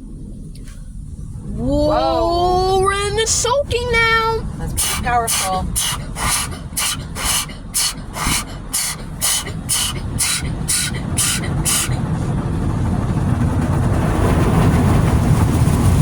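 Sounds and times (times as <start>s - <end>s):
rumble of water and machinery: 0.0s - 16.0s
water jets swishing over car: 2.5s - 12.3s.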